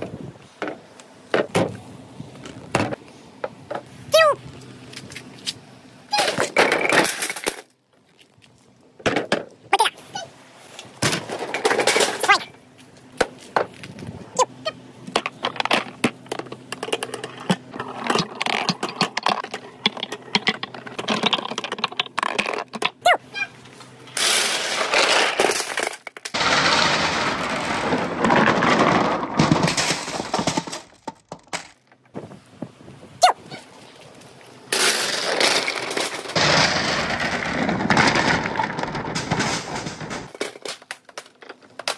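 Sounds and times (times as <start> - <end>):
balls rolling rumble: 0.0 - 9.7, 10.5 - 33.2, 34.1 - 41.9
marbles clacking against bamboo: 15.1 - 23.1.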